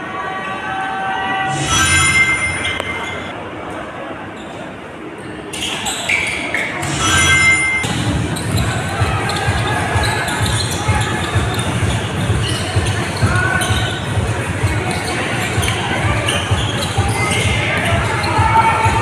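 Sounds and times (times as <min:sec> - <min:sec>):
crowd noise: 0:00.0 - 0:19.0
sneakers squeaking on court: 0:05.2 - 0:19.0.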